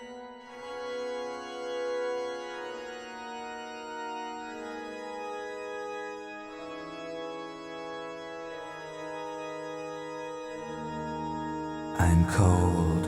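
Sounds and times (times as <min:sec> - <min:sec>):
organ chords: 0:06.2 - 0:13.0.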